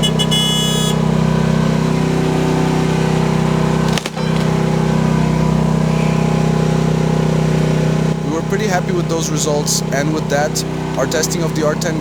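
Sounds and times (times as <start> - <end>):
excavator engine running: 0.0 - 12.0.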